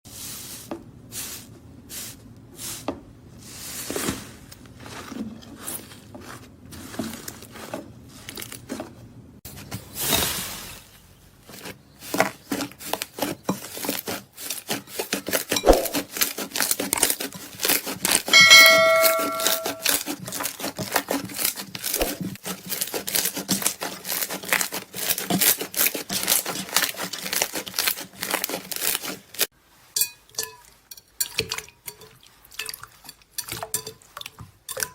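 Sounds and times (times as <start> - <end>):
short ringing tone: 18.4 - 19.9.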